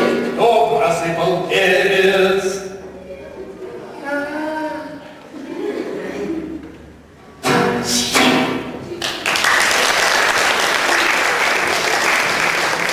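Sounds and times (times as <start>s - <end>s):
audience applause: 9.0s - 12.9s.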